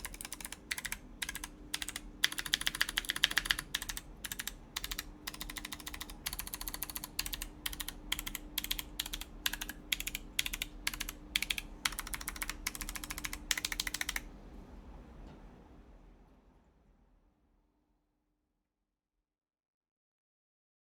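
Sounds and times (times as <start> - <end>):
mechanical keyboard typing: 0.0 - 14.3.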